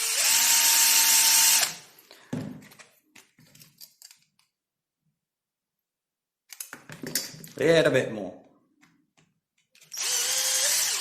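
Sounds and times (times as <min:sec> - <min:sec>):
power drill running: 0:00.0 - 0:01.8, 0:09.9 - 0:11.0.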